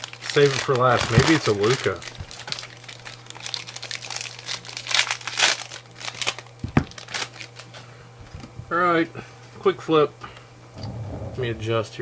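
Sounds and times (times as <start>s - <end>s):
plastic wrappers crinkling: 0.0s - 7.8s
steady low hum: 10.2s - 12.0s.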